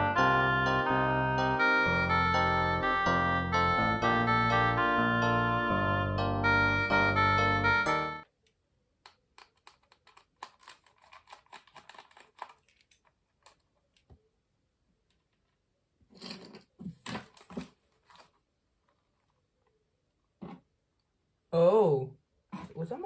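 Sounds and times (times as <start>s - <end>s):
plastic toy clicks and scrapes: 9.0s - 13.6s.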